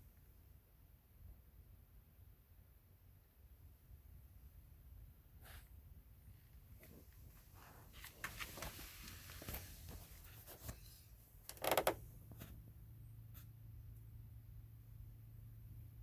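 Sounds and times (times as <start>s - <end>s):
light clicks and knocks: 11.4s - 12.5s.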